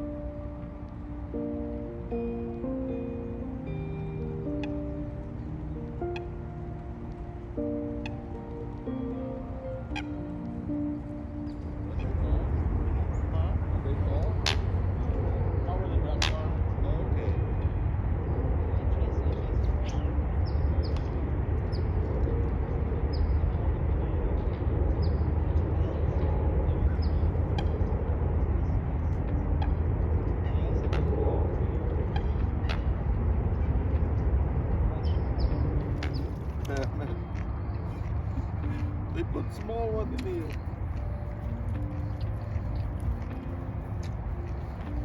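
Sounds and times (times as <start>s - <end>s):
low rumble of outdoor noise: 0.0s - 45.0s
soft instrumental music: 0.0s - 45.0s
bird chirping: 3.1s - 16.6s, 35.0s - 45.0s.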